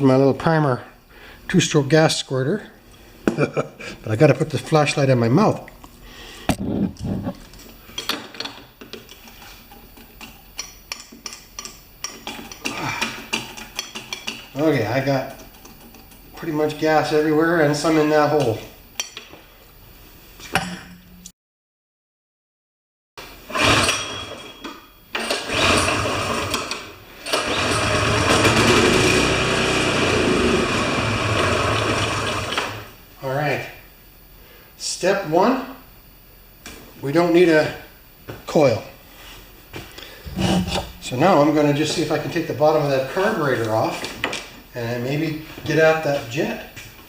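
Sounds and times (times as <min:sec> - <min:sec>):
snow thrower engine starting: 0:23.5 - 0:24.4, 0:25.1 - 0:32.9.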